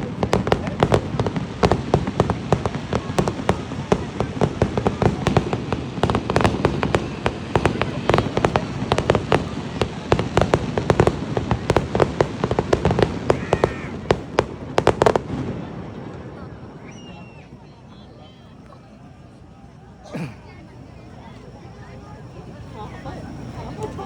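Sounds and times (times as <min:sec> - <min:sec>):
fireworks bangs and crackles: 0:00.0 - 0:24.0.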